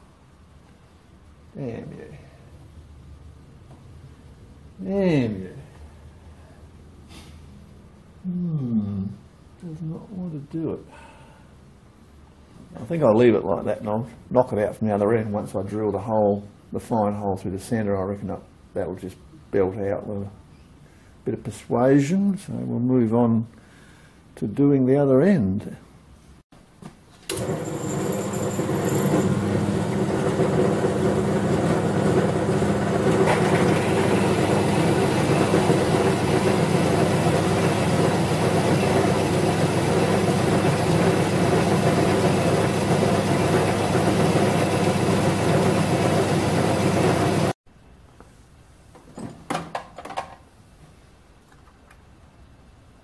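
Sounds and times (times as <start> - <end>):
metal lathe motor humming: 27.3 - 47.5.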